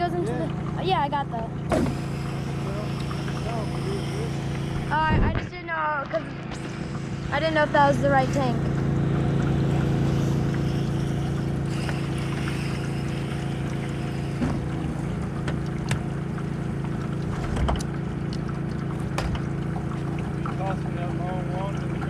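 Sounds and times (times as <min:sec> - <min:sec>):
pressure washer engine running: 0:00.0 - 0:17.2.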